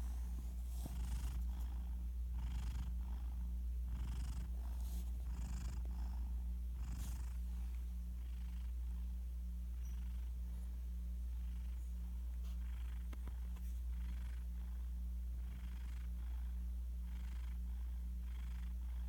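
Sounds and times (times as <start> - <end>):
cat breathing with snore-like rumble: 0.0 - 8.9
steady low hum: 0.0 - 19.0.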